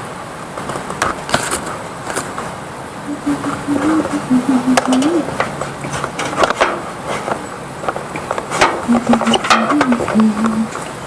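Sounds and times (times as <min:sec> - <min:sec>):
person humming softly: 0:03.1 - 0:05.4, 0:08.9 - 0:10.8.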